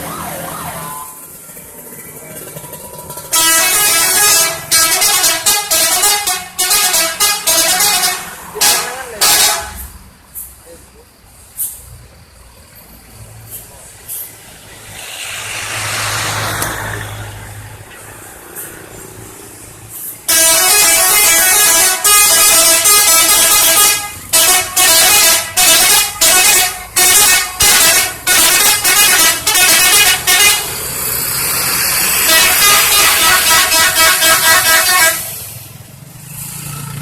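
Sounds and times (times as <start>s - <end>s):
musical bus air horn: 3.2s - 10.0s, 19.9s - 35.8s
vehicle passing: 7.5s - 9.2s, 13.0s - 20.3s, 30.1s - 37.0s.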